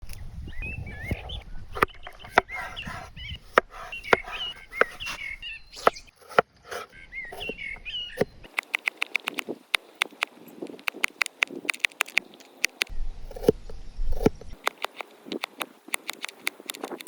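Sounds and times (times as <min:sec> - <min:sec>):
birds warbling: 0:00.1 - 0:14.1.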